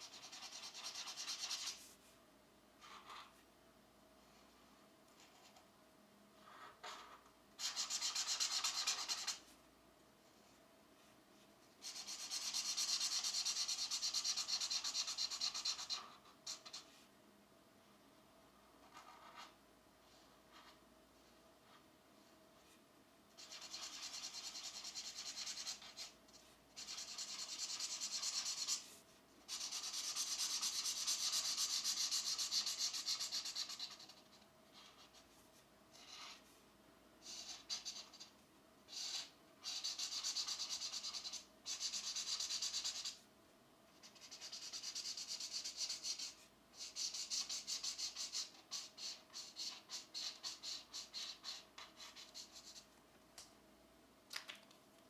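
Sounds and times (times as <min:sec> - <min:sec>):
pencil shading on paper: 0:00.0 - 0:01.8, 0:06.7 - 0:09.4, 0:11.8 - 0:16.9, 0:23.4 - 0:26.2, 0:26.8 - 0:28.9, 0:29.5 - 0:35.2, 0:37.2 - 0:38.3, 0:38.9 - 0:43.2, 0:44.0 - 0:52.8.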